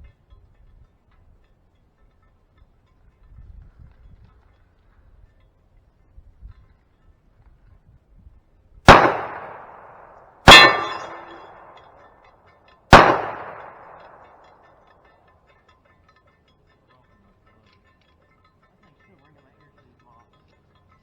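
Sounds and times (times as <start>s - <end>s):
pistol shots with echo: 8.9s - 12.0s, 12.9s - 14.6s
steel target clang: 8.9s - 12.0s, 12.9s - 14.6s.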